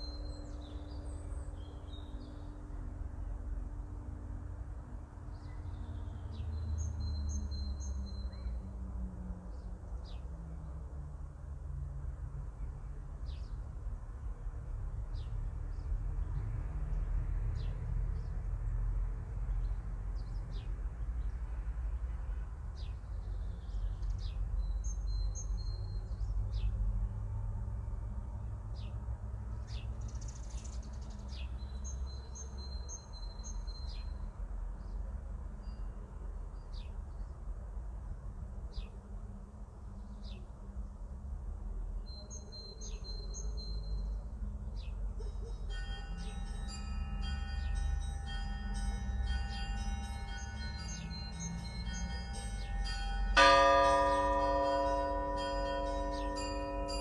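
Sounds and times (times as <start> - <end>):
church bells ringing: 45.6 - 57.0.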